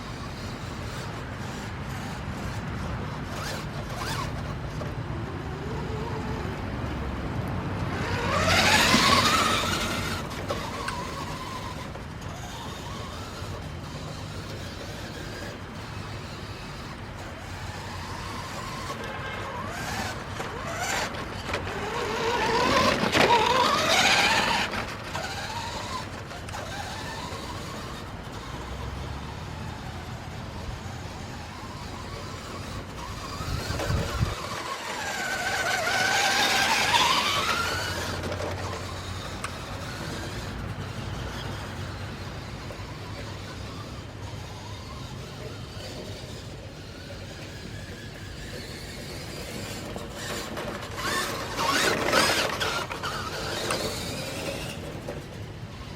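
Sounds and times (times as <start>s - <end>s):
steady background hum: 0.0s - 55.9s
vehicles passing: 0.0s - 55.9s.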